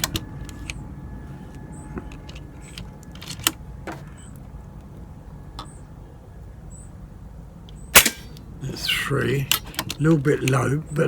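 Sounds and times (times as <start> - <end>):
air rifle clicks: 0.0 - 0.8, 1.5 - 4.4, 7.7 - 8.5, 9.5 - 10.7
low steady rumble: 0.0 - 11.0.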